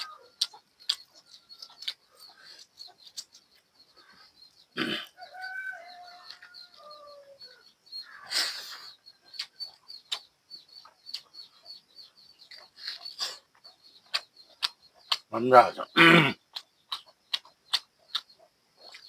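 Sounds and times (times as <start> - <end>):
chewing mouth sounds: 0.0 - 3.6, 16.5 - 19.0
faint high chirping: 0.0 - 19.0.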